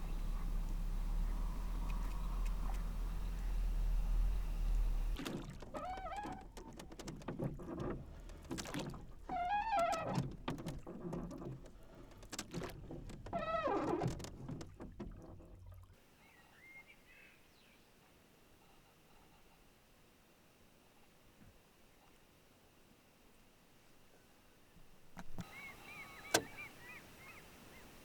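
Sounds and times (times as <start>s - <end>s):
wavering wailing calls: 0.0s - 6.5s
boat knocking on water: 0.0s - 15.9s.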